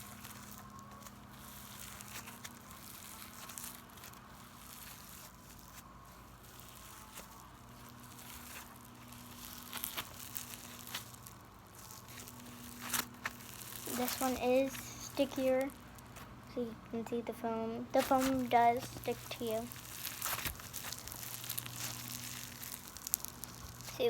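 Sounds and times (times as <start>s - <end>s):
foam slime crackling: 0.0s - 24.0s.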